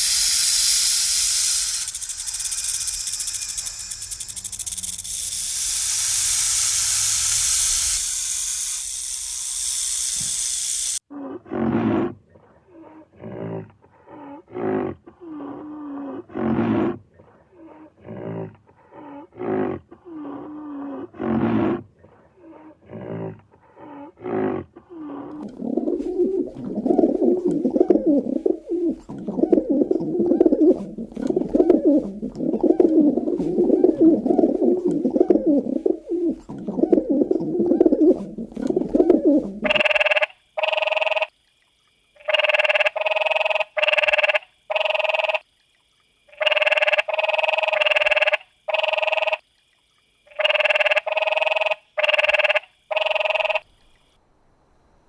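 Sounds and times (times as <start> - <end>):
low animal calls: 22.4 - 40.0.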